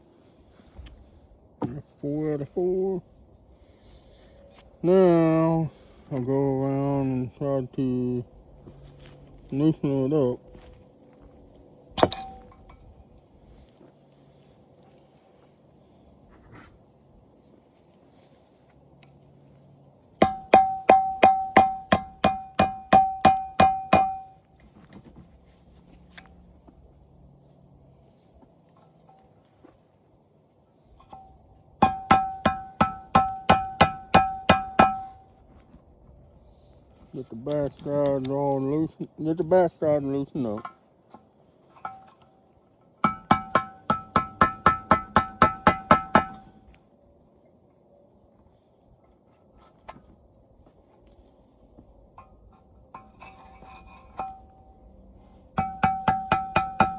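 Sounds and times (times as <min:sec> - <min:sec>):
hammer striking metal: 0:20.2 - 0:24.4, 0:31.1 - 0:35.2, 0:43.0 - 0:46.5, 0:55.6 - 0:56.9.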